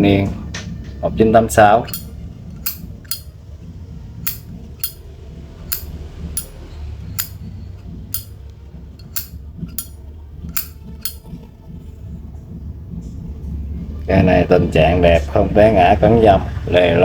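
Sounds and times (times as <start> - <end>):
lighter lid clicking open and shut: 1.9 - 3.2, 4.3 - 5.0, 5.7 - 6.5, 9.0 - 11.2.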